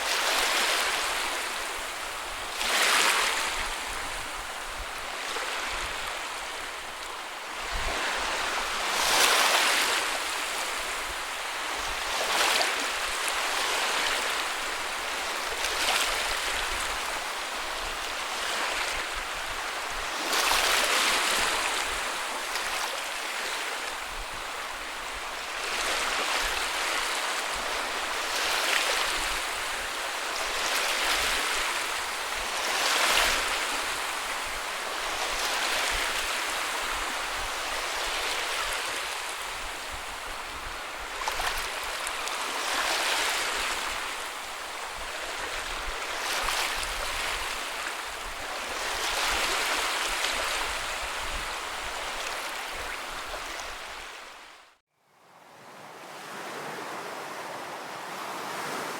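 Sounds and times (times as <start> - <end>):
ocean waves breaking: 55.7 - 58.9.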